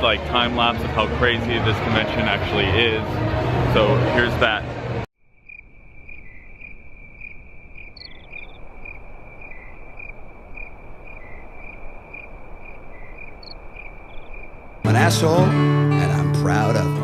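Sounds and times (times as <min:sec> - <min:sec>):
crickets chirping: 0:05.2 - 0:14.9.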